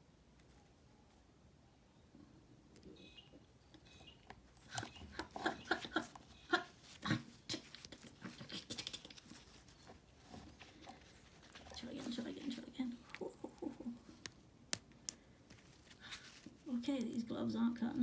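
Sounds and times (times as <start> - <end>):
soft scratching and rustling: 4.4 - 18.0.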